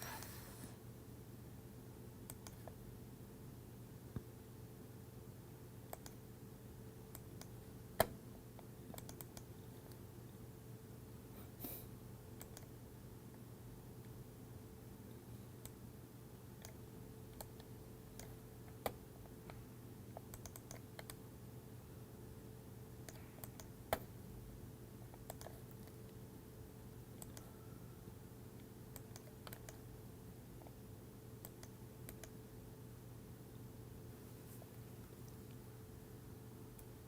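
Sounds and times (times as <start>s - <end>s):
mouse and keyboard clicks: 8.9s - 10.0s, 20.1s - 21.2s, 25.2s - 26.0s, 28.9s - 29.8s.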